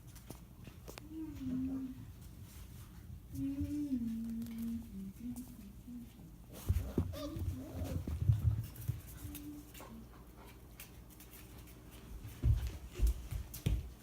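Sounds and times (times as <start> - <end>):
puppies whining: 6.8 - 8.3.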